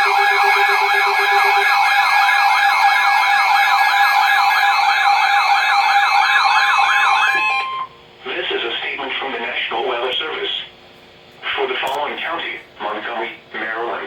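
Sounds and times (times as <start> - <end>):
electronic alert warble: 0.0 - 4.0, 6.2 - 7.9.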